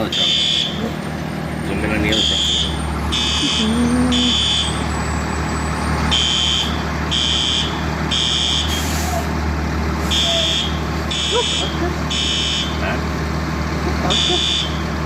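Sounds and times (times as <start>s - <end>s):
fire truck engine idling: 0.0s - 15.0s
fire alarm beeps: 0.2s - 0.8s, 2.2s - 4.8s.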